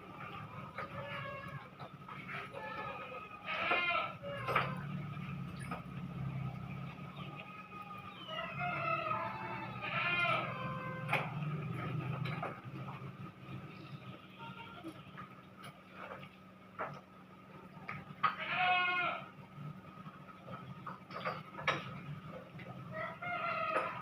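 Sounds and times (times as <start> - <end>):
animal bleat-like cries: 0.8 - 1.7, 2.3 - 4.8, 9.0 - 11.1, 14.3 - 15.0, 18.3 - 19.3.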